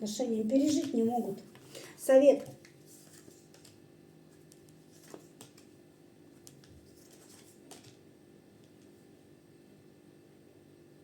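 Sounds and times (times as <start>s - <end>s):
tarot cards tapping and rustling: 0.5s - 3.8s, 4.4s - 8.0s.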